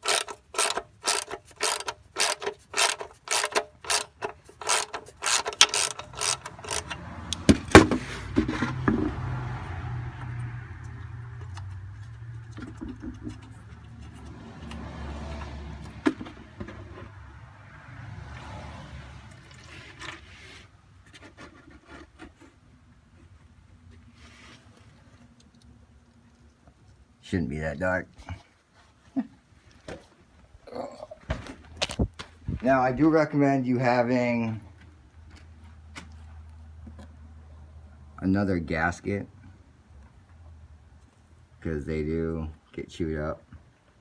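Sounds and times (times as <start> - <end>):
socket ratchet clicking: 0.0 - 7.8
oil draining into can: 19.3 - 20.2.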